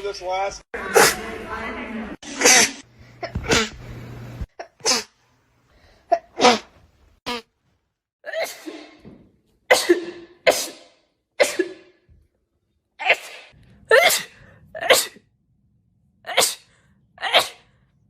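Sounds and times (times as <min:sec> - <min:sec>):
people sneezing: 0:00.9 - 0:01.3, 0:02.2 - 0:03.8, 0:13.0 - 0:15.2, 0:16.3 - 0:17.7.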